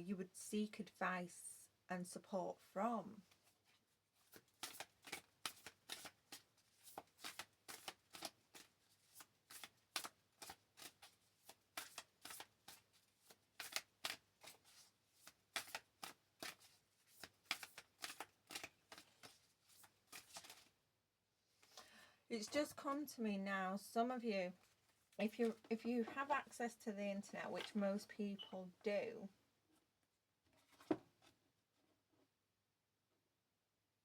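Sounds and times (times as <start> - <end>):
cards being shuffled: 4.2 - 20.7.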